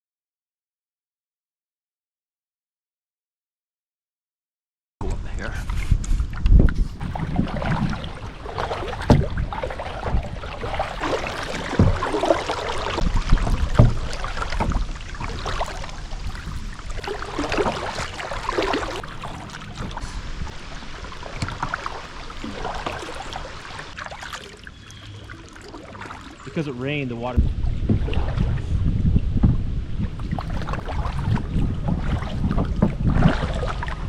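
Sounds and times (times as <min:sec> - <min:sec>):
low thumps: 0:05.0 - 0:24.0, 0:26.5 - 0:33.7
paddle strokes splashing water: 0:05.6 - 0:34.0.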